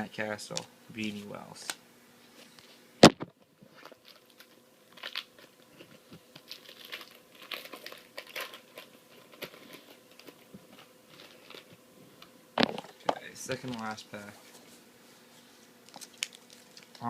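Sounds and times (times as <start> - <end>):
card wrapper crinkling and rustling: 3.0 - 11.8, 15.8 - 17.0.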